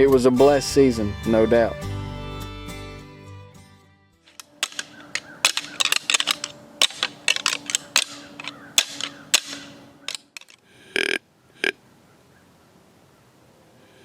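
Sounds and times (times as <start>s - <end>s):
hard objects clacking: 4.3s - 10.6s.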